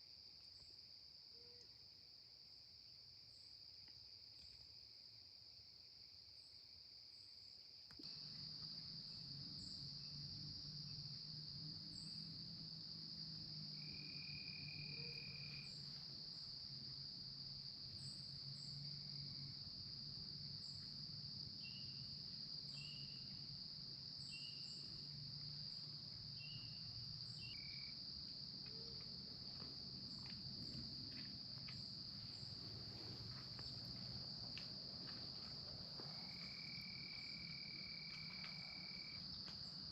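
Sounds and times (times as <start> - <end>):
insect high-pitched trill: 8.1 - 28.0, 33.3 - 39.9
short insect chirps: 13.4 - 16.9, 21.6 - 23.5, 24.2 - 28.0.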